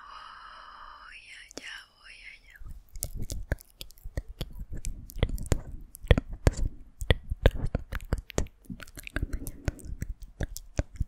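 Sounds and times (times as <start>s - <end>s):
wet clicks and soft taps: 2.8s - 11.0s.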